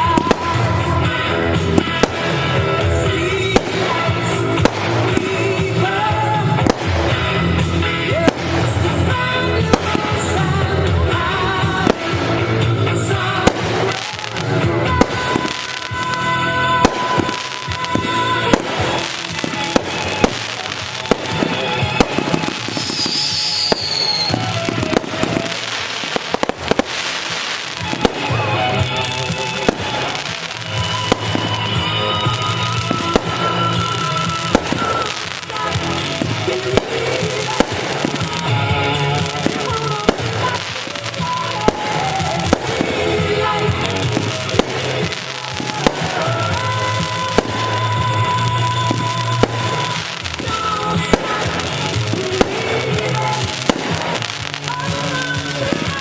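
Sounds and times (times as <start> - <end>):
firework rising whistle: 0.0 - 5.2, 11.8 - 56.0
fireworks bangs and pops: 0.0 - 56.0
music playing: 0.0 - 56.0.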